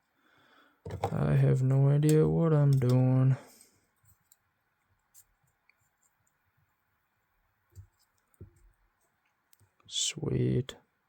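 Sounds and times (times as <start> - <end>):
faint clicks of knife parts: 2.0 - 6.4.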